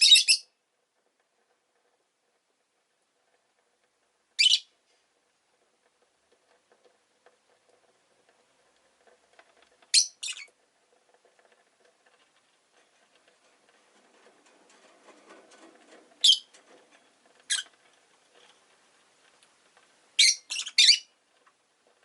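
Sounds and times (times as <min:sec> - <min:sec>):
lovebird chirping: 0:00.0 - 0:00.5, 0:04.4 - 0:04.7, 0:09.9 - 0:10.5, 0:16.2 - 0:16.5, 0:17.5 - 0:17.7, 0:20.2 - 0:21.1.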